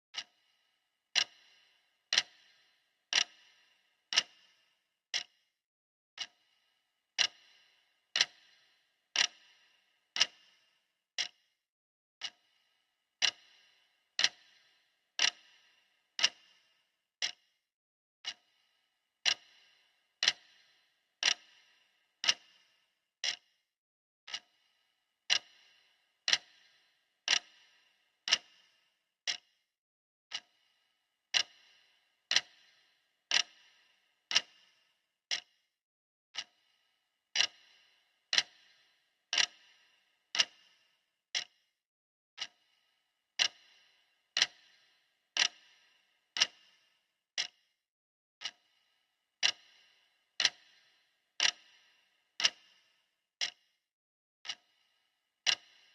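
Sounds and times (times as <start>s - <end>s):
clock ticking: 0.1s - 5.5s, 6.2s - 11.5s, 12.2s - 17.5s, 18.2s - 18.6s, 19.2s - 23.6s, 24.3s - 29.6s, 30.3s - 30.7s, 31.3s - 35.6s, 36.4s - 41.6s, 42.4s - 47.7s, 48.4s - 53.8s, 54.4s - 55.9s.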